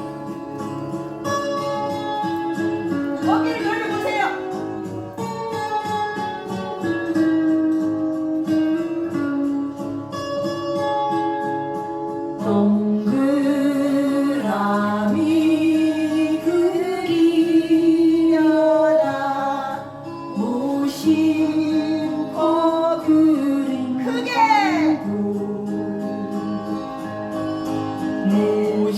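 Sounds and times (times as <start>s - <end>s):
guitar accompaniment: 0.0s - 28.9s
person singing with vibrato: 12.4s - 26.5s.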